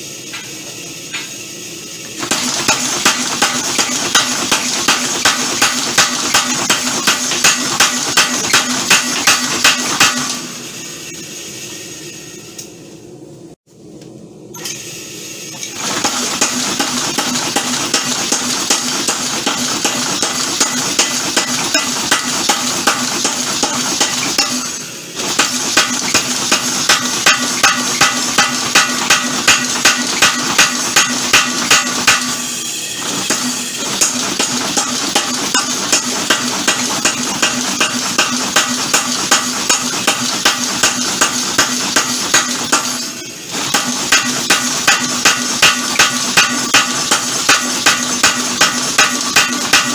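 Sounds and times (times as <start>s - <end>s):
power hammer striking steel: 2.2s - 10.6s, 15.8s - 49.9s.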